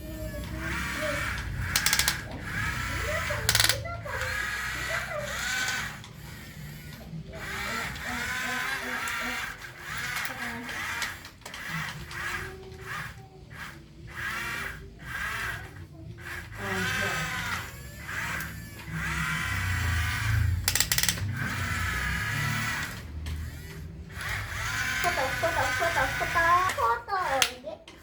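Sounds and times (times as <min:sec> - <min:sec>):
children's voices: 0:00.0 - 0:01.7, 0:02.7 - 0:06.0, 0:11.7 - 0:17.7, 0:23.7 - 0:28.0.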